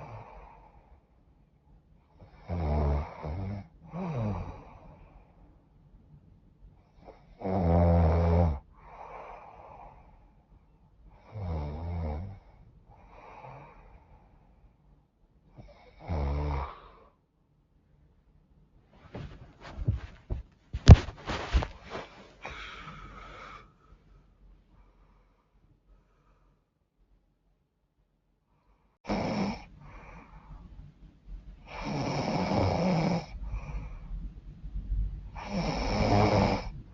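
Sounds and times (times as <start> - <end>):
soft breaths: 0.0 - 2.4, 8.6 - 11.4, 12.3 - 16.0, 18.8 - 26.9, 29.6 - 32.0, 32.8 - 36.9
woman snoring: 2.2 - 4.8, 7.0 - 9.6, 11.2 - 12.4, 15.6 - 17.1, 29.1 - 30.2, 31.7 - 33.4, 35.4 - 36.8.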